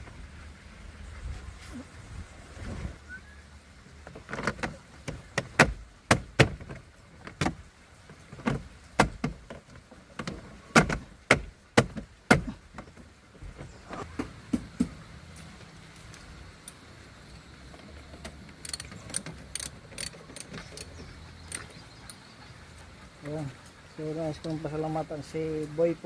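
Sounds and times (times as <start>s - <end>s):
sharp irregular knocks: 4.1s - 7.6s, 8.4s - 13.0s.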